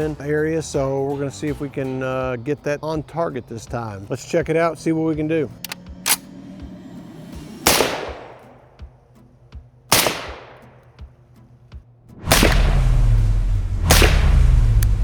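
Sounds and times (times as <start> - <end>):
suppressed rifle shots: 5.6 - 6.4, 7.6 - 9.0, 9.9 - 11.2, 12.2 - 15.0
low steady rumble: 12.1 - 15.0.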